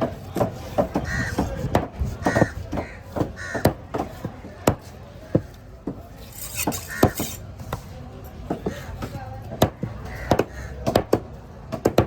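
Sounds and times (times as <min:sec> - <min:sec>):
crows cawing: 0:01.0 - 0:01.4, 0:02.2 - 0:03.8, 0:06.9 - 0:07.2, 0:10.0 - 0:10.8.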